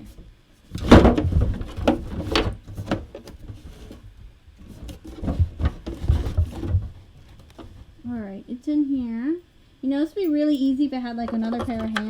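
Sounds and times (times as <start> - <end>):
plastic parts knocking: 0.7 - 4.0, 4.7 - 7.8, 11.2 - 12.0.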